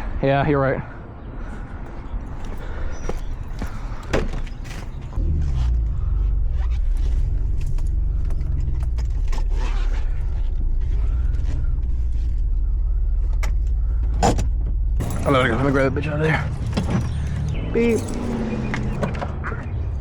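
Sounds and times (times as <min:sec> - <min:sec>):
loud low rumble: 0:05.2 - 0:20.0
metal creaking and clicking: 0:06.7 - 0:19.7.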